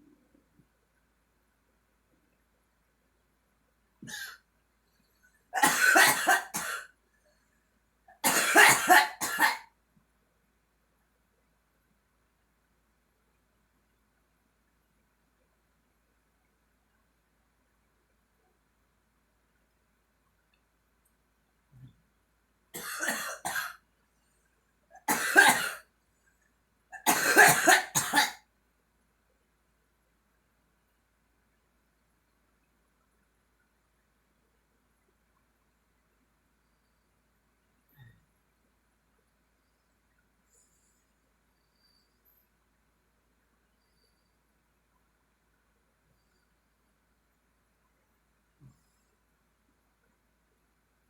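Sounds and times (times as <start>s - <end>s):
girl coughing: 5.6s - 6.8s, 8.2s - 9.6s, 25.1s - 25.8s, 27.0s - 28.4s.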